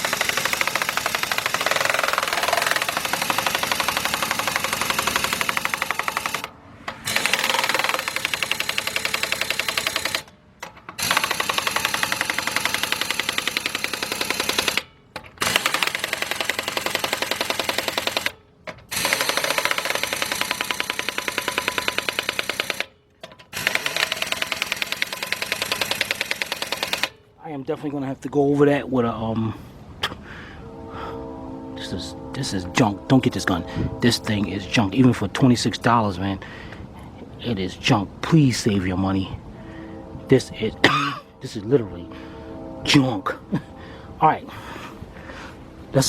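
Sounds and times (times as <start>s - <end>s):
air impact wrench hammering: 0.0s - 27.3s.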